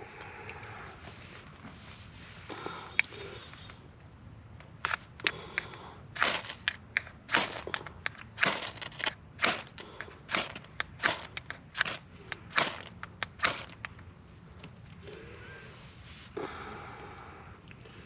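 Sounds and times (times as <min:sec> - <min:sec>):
dry twigs crunching: 0:06.2 - 0:13.9.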